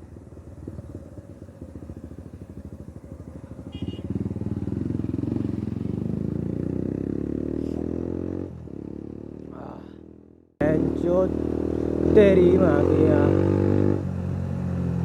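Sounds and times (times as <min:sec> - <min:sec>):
motorcycle engine revving: 0:00.0 - 0:15.0.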